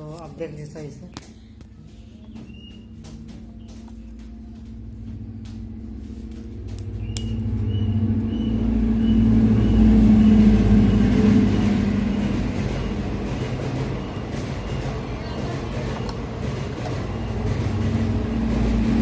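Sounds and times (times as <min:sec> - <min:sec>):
low rumble with hum: 0:00.0 - 0:19.0.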